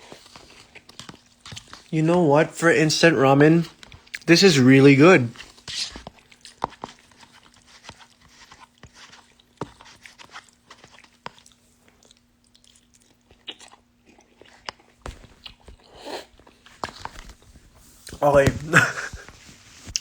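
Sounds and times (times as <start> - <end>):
person chewing: 0.0 - 1.9, 3.8 - 4.3, 5.4 - 17.4.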